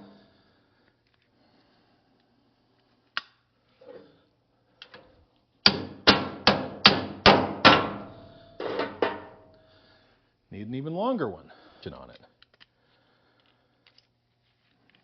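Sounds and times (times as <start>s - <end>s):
hammer striking metal: 5.6s - 9.5s.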